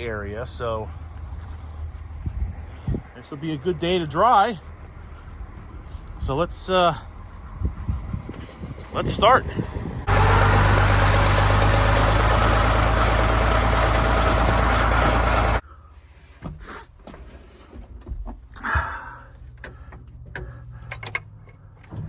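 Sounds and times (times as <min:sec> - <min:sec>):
faint engine hum: 0:00.0 - 0:16.1
farm machine running: 0:10.1 - 0:15.6.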